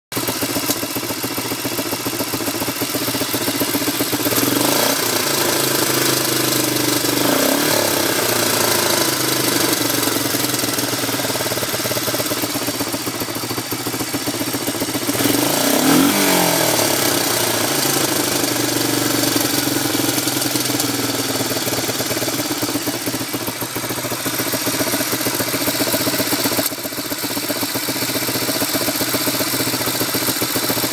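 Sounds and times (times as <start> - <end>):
engine idling and revving: 0.1 - 30.9.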